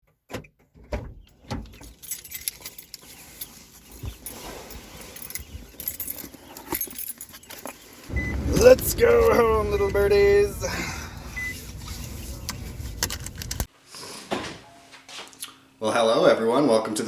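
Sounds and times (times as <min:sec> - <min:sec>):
rustling handling noise: 0:01.6 - 0:08.1, 0:11.3 - 0:14.3
jingling: 0:01.8 - 0:13.7
sharp clicks and knocks: 0:12.4 - 0:13.7.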